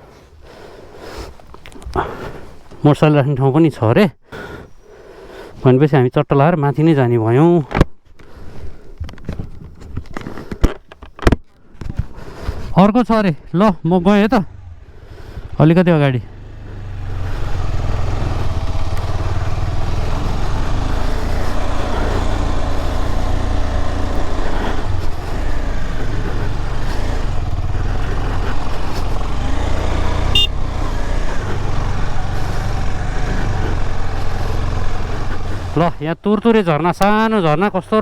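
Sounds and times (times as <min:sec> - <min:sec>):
motorcycle engine running under load: 0:14.2 - 0:36.0
brief high-pitched tone: 0:30.4 - 0:30.6.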